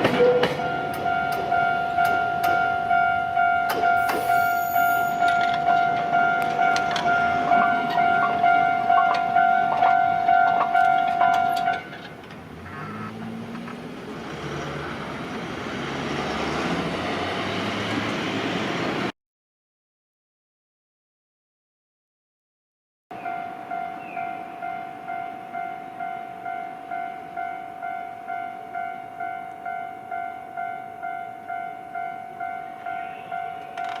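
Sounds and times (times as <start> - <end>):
train rumble: 0.0 - 19.1
level crossing electric bell: 0.2 - 12.0, 23.1 - 34.0.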